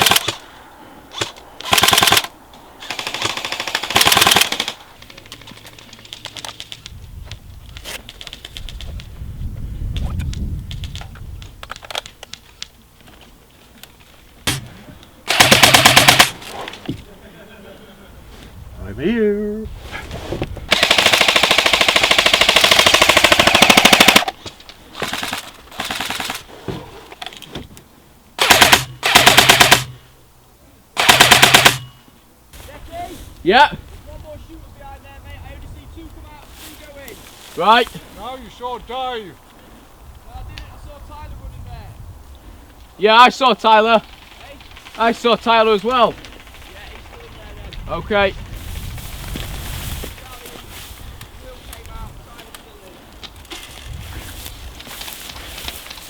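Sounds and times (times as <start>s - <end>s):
airsoft guns firing bursts: 0.0s - 0.4s, 1.2s - 6.8s, 14.5s - 16.5s, 20.7s - 24.4s, 25.0s - 26.5s, 28.4s - 30.0s, 31.0s - 31.9s, 43.8s - 47.3s.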